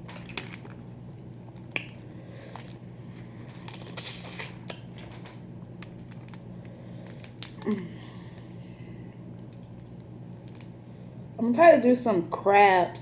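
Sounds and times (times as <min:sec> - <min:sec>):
steady low hum: 0:00.0 - 0:13.0
crunching and sucking: 0:01.5 - 0:05.1
crawfish shell cracking: 0:07.0 - 0:08.5.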